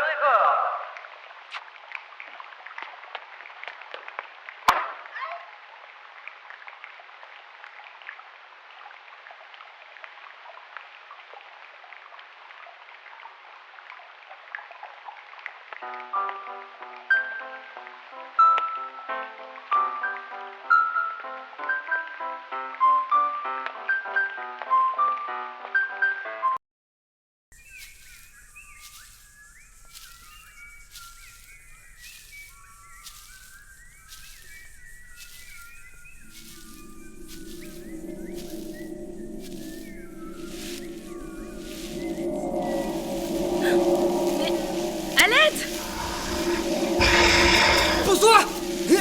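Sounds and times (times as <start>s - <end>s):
small birds chirping: 27.6s - 46.9s
small irregular ticks: 27.6s - 49.0s
steady hiss: 27.6s - 49.0s
tune playing: 36.2s - 49.0s.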